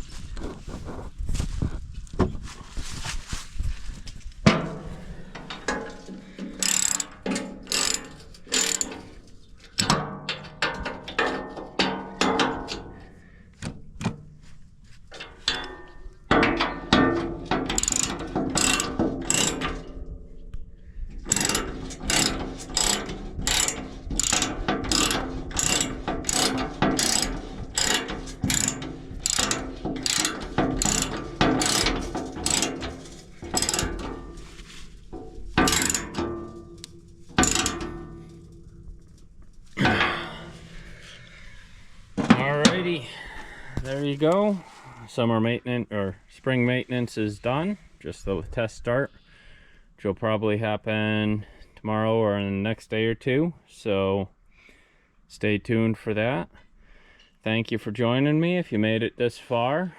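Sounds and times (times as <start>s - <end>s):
socket ratchet clicking: 6.6s - 9.0s, 17.5s - 19.8s, 21.3s - 34.3s, 35.6s - 36.2s, 36.8s - 38.0s.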